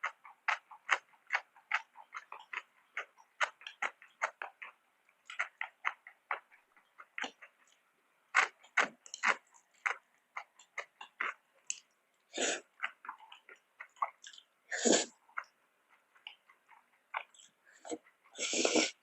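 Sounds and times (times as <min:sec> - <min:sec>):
chewing with wet mouth clicks: 0:00.0 - 0:19.0
loud mouth sounds: 0:12.3 - 0:12.8, 0:14.2 - 0:15.2, 0:17.9 - 0:19.0.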